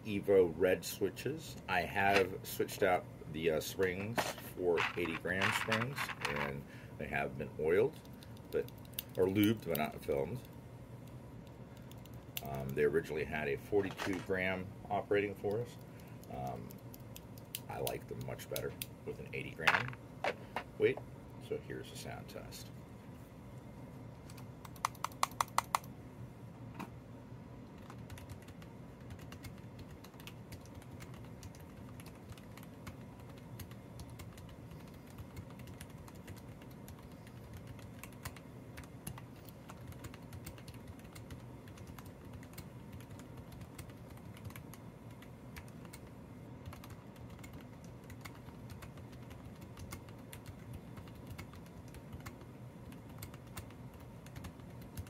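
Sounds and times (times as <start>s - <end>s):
mechanical keyboard typing: 4.8s - 6.5s, 24.3s - 25.9s, 27.8s - 55.0s.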